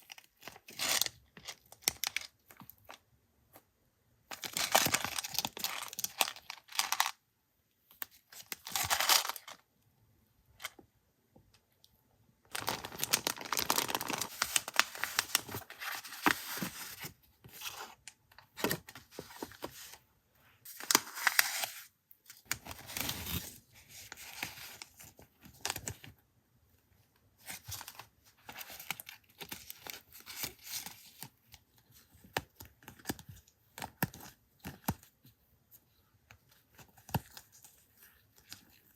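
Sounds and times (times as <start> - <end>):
paper packaging tearing and crinkling: 12.5 - 16.7.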